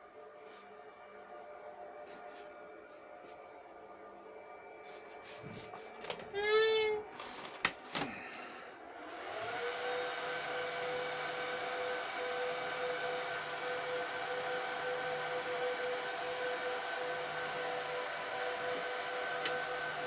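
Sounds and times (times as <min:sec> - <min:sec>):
cooling fans whining: 0:00.0 - 0:20.0.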